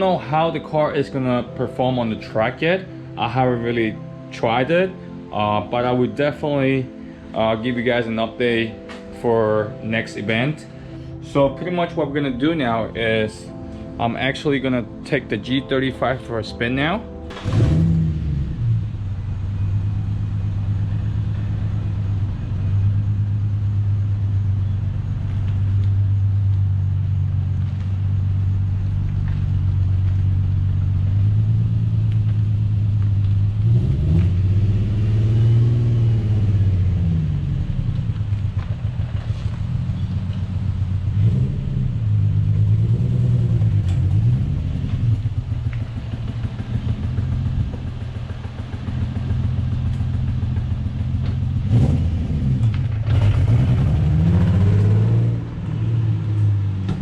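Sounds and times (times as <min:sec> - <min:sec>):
car engine revving: 0:17.3 - 0:57.0.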